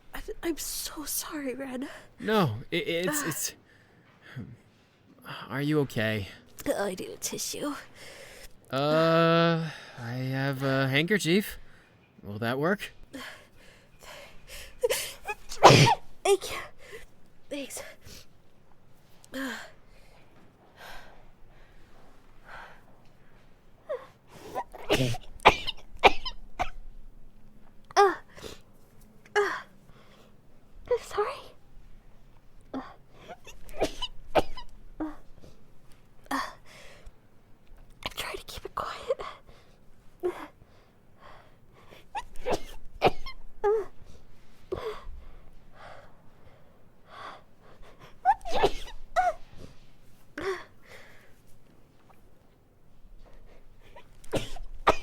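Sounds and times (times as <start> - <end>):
woman sneezing: 3.1 - 3.5, 14.9 - 16.7, 24.4 - 26.4, 33.3 - 35.2, 42.2 - 43.9, 48.3 - 49.4
woman breathing and gasping: 7.9 - 8.5, 13.1 - 15.5, 43.6 - 51.4.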